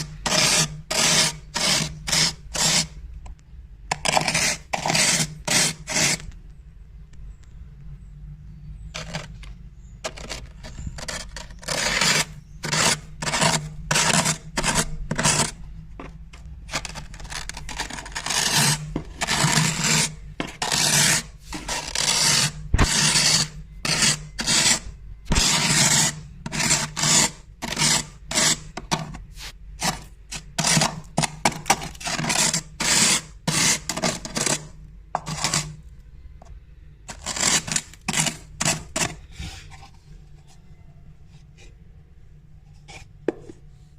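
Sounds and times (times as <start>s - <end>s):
glass scraping freezer frost: 0.0s - 3.0s, 3.9s - 6.3s, 9.0s - 15.6s, 16.7s - 35.8s, 37.1s - 39.8s.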